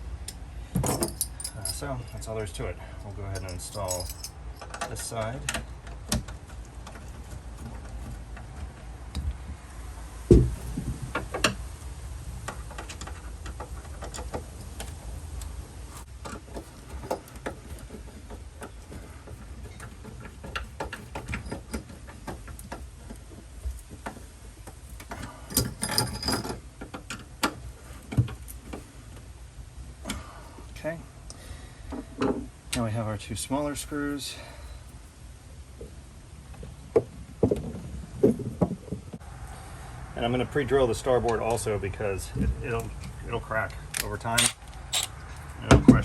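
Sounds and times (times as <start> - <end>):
clicks and knocks of tools: 43.0 - 45.5.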